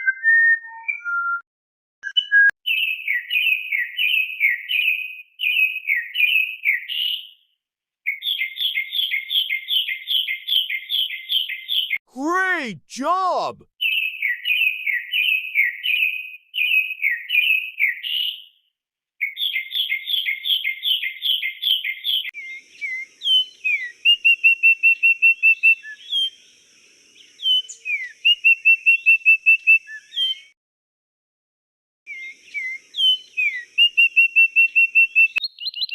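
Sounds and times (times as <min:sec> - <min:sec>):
faint steady high hiss: 0:26.4 - 0:27.3
bird chirping: 0:35.3 - 0:35.9.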